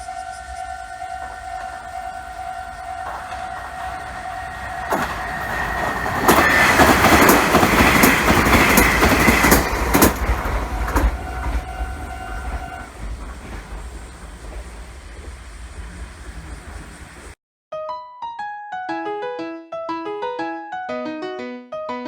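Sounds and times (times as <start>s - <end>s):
level crossing bell ringing: 0.0s - 6.0s
electric train passing: 0.0s - 17.4s
train wheels clicking on rail joints: 0.0s - 17.4s.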